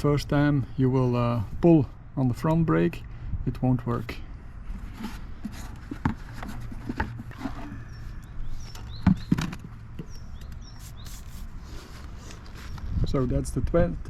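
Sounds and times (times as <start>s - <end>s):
birds chirping: 0.0s - 3.3s, 6.0s - 13.3s.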